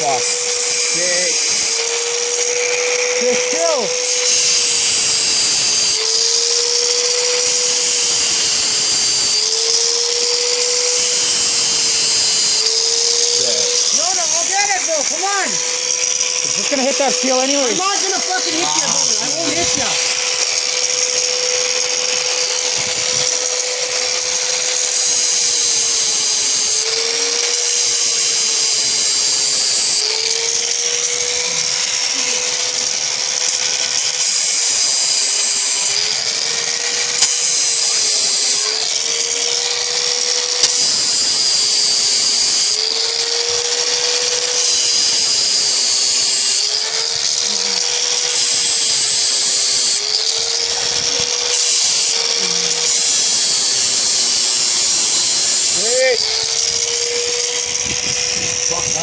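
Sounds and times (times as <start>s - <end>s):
power tool cutting steel: 0.0s - 59.0s.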